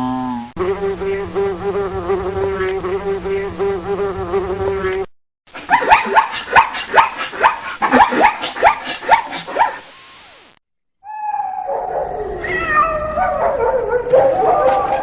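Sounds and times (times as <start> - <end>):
dog barking in quick yips: 5.7 - 9.8
cat meowing: 11.1 - 13.5.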